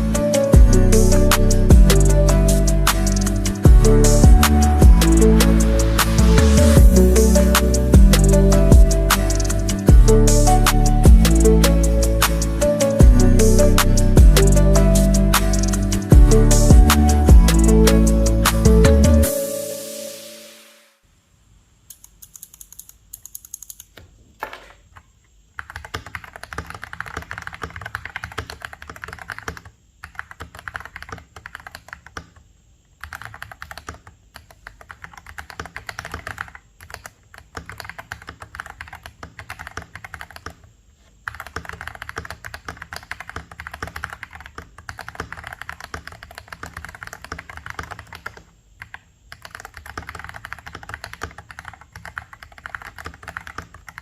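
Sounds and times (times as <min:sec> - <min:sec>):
mechanical keyboard typing: 0:21.9 - 0:32.4, 0:33.0 - 0:54.0.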